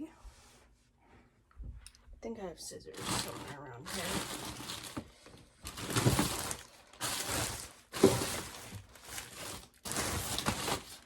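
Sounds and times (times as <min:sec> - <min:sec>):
rummaging through loose objects: 0:02.9 - 0:11.0.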